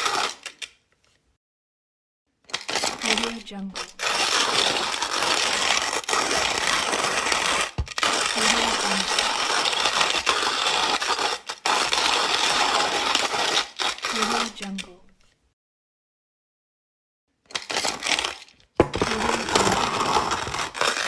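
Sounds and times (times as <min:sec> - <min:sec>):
coffee grinder crunching beans: 0:00.0 - 0:00.7, 0:02.5 - 0:14.8, 0:17.5 - 0:21.0.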